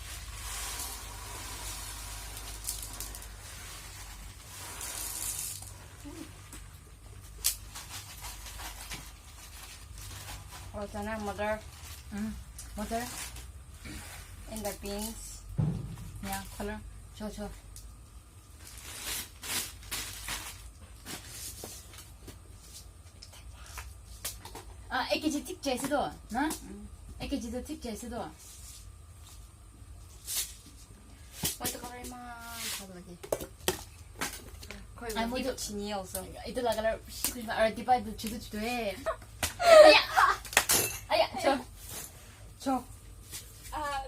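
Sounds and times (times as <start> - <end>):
packages rustling: 0.0 - 15.1, 18.5 - 23.0
steady low hum: 0.0 - 44.0.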